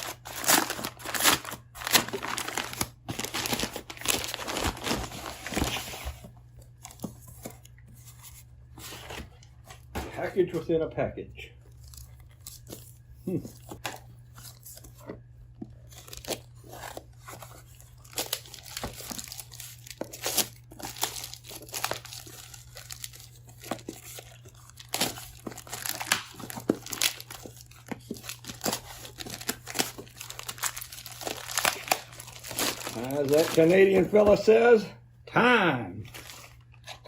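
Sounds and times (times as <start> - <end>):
packaging tearing and crinkling: 0.0 - 6.1, 15.8 - 34.4.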